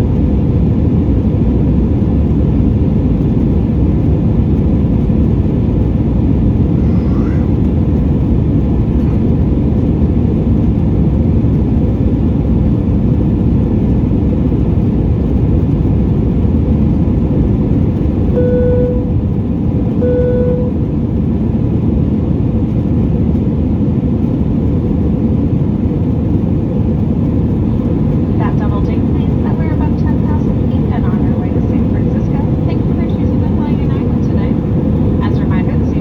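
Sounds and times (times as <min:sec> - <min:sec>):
aircraft cabin noise: 0:00.0 - 0:36.0
short cabin chime tones: 0:18.4 - 0:19.2, 0:20.0 - 0:20.9.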